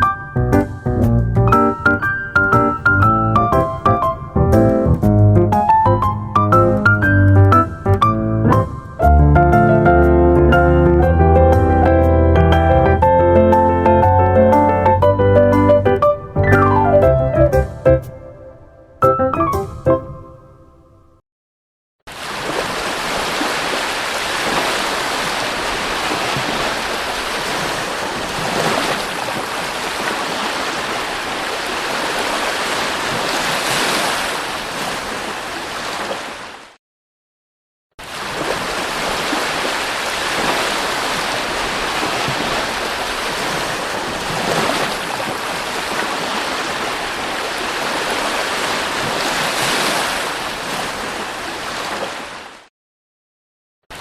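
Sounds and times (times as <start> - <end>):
waves breaking on beach: 22.1 - 36.8, 38.0 - 52.7.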